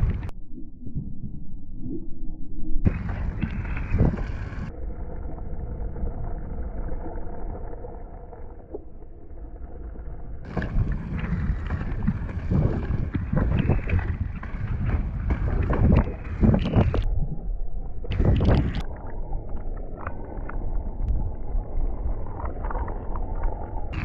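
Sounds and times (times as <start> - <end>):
wind buffeting microphone: 2.9 - 4.7, 10.5 - 17.1, 18.1 - 18.8
skate wheels rolling on dirt: 10.5 - 17.1.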